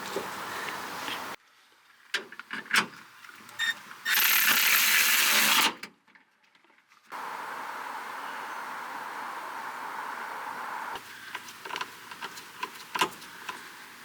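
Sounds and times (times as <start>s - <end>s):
loud steady hiss: 7.2s - 14.0s.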